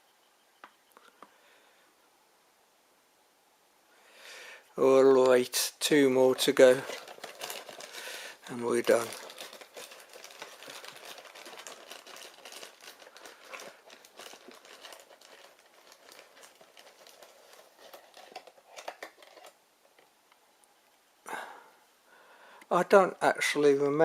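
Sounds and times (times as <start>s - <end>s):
packaging crinkling: 5.2s - 20.1s.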